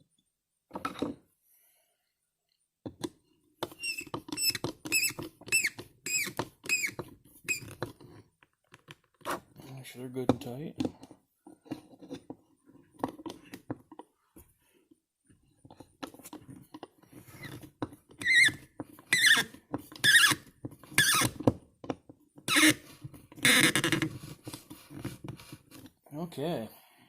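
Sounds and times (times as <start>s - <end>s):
screws squeaking: 3.6s - 7.9s, 17.1s - 21.5s, 22.5s - 22.8s, 23.4s - 24.2s.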